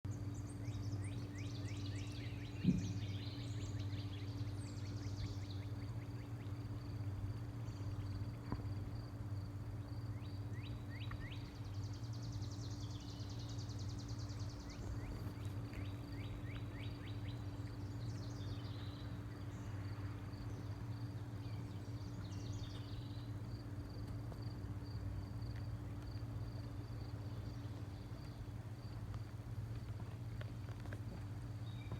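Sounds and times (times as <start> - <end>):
birds chirping: 0.1 - 8.6, 9.7 - 23.8
steady low hum: 0.1 - 31.9.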